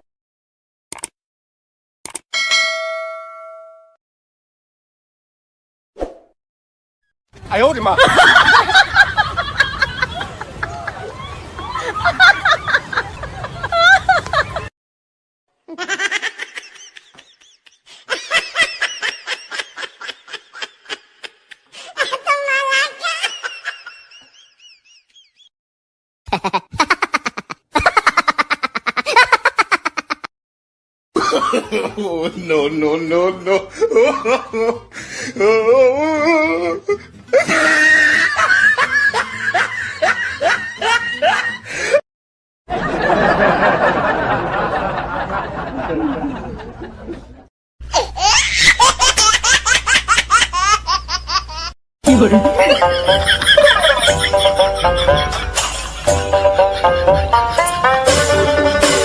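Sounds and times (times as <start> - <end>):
group laughing: 7.8 - 14.7, 15.7 - 22.4, 23.0 - 25.5, 26.3 - 30.3, 31.2 - 35.1, 36.7 - 42.0, 42.7 - 47.5, 48.3 - 59.0
high-pitched gliding laugh: 8.0 - 14.7, 47.9 - 59.0.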